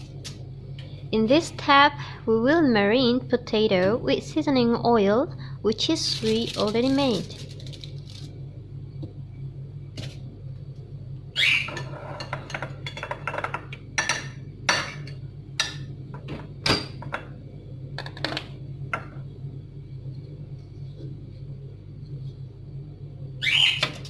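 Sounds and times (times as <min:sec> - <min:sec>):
bird squawking and chirping: 0:11.4 - 0:11.9, 0:23.4 - 0:24.0.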